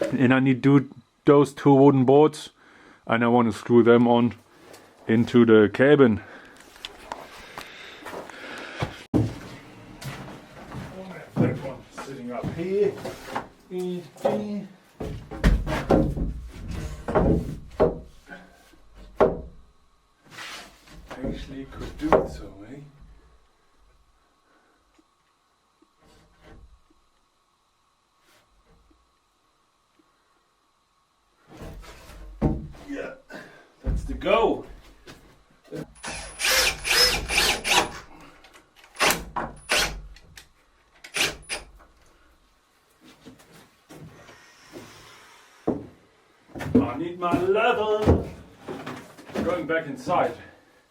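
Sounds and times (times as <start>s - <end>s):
hollow wooden knocks and thumps: 15.0s - 18.2s, 18.8s - 19.7s, 20.9s - 22.5s, 31.5s - 32.9s, 45.7s - 49.6s
power drill driving screws into wood: 36.0s - 38.1s, 38.8s - 40.1s, 41.0s - 41.7s.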